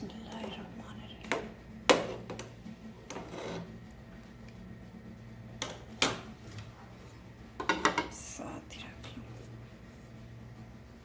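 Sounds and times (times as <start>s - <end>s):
steady low hum: 0.0s - 11.0s
cookware knocking: 7.6s - 8.2s.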